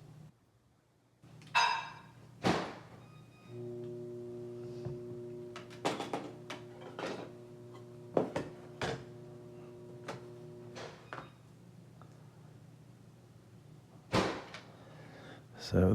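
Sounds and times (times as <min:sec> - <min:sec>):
steady low hum: 0:03.5 - 0:11.2.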